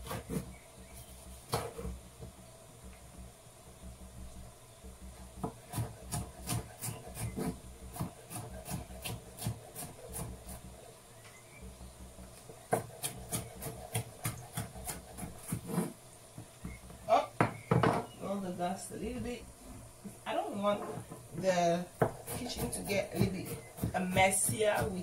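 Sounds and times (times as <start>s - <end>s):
knife cutting on cutting board: 5.7s - 10.3s, 12.7s - 15.9s.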